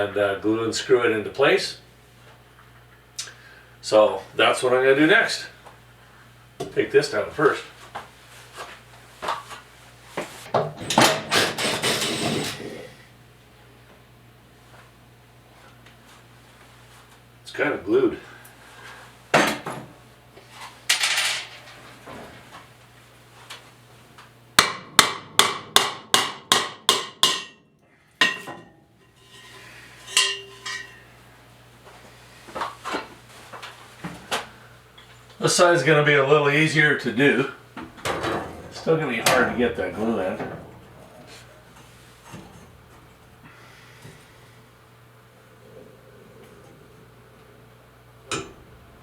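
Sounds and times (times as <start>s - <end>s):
hammer striking wood: 24.6s - 27.6s.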